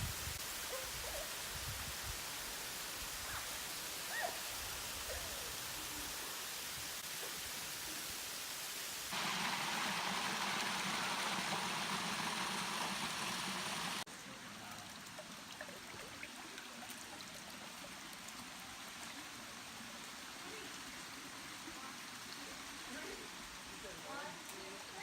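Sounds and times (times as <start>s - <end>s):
water hissing: 0.0s - 14.1s
water rushing: 2.3s - 25.0s
water dripping: 9.1s - 19.1s.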